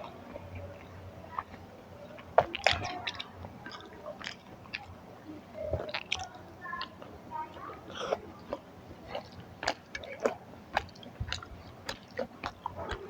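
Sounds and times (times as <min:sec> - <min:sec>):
person chewing food: 0:02.2 - 0:05.0, 0:05.7 - 0:13.0.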